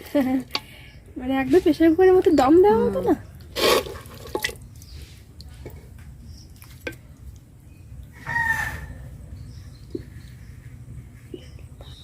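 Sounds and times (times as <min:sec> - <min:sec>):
chicken calling: 0:08.1 - 0:09.2.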